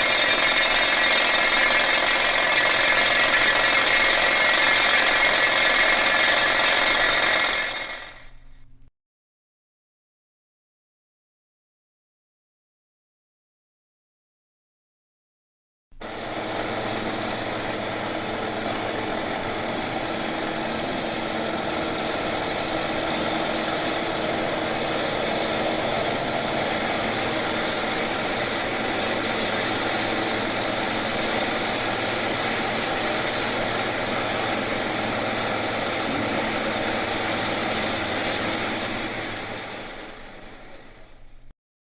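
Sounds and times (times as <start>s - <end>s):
heavy engine humming: 0.0s - 8.7s, 16.0s - 41.5s.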